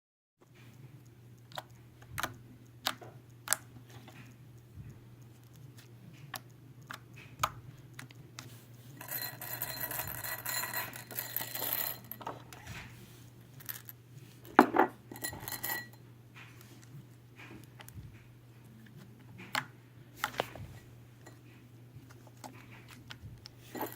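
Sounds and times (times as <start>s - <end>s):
steady low hum: 0.4s - 23.9s.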